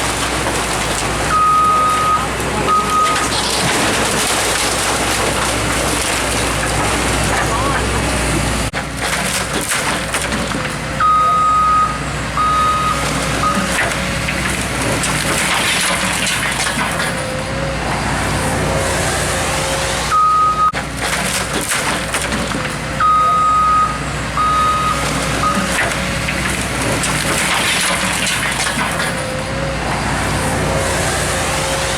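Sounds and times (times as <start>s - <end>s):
building crunching and rumbling: 0.0s - 11.0s, 12.0s - 20.1s, 23.6s - 31.9s
diesel engine running: 0.0s - 31.9s
warning alarm beeping: 1.3s - 3.3s.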